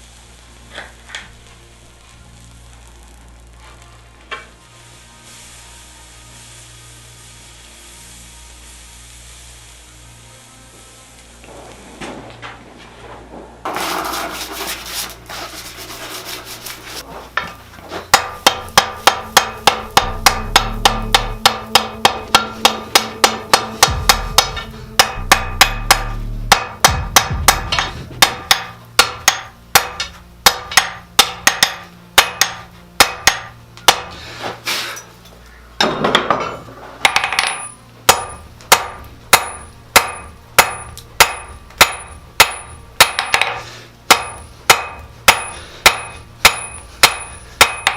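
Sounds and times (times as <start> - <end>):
hammer striking steel on anvil: 17.4 - 34.2, 35.8 - 47.9.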